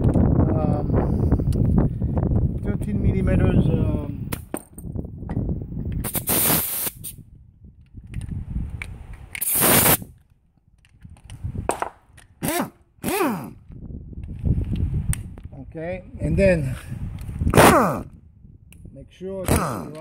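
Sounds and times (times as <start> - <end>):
pneumatic ratchet air hiss: 6.0 - 7.2, 9.4 - 10.0.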